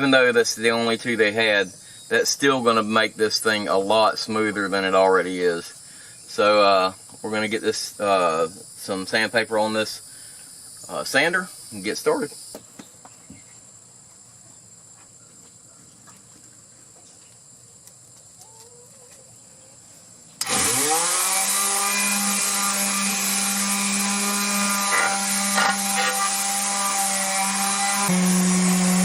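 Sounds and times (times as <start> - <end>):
electric sander sanding metal: 20.4 - 29.0.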